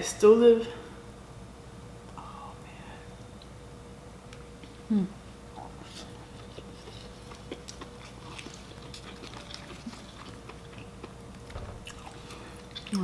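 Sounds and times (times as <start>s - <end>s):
mouth chewing wet smacks: 5.7s - 13.0s.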